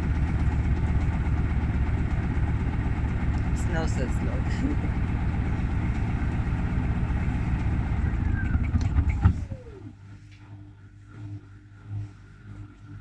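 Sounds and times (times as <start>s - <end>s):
washing machine drum spinning: 0.0s - 10.0s
motor whine winding down: 0.0s - 13.0s.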